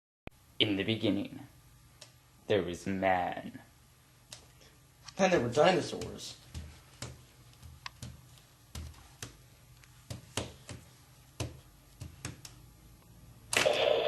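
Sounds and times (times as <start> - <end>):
sharp clicks and taps: 6.0 - 12.6
loud sustained noise: 13.5 - 14.0.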